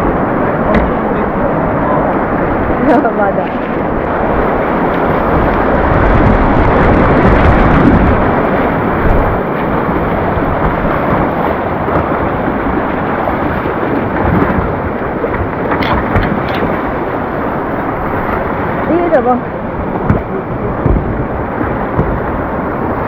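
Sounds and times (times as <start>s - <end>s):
river rapids roaring: 0.0s - 23.0s.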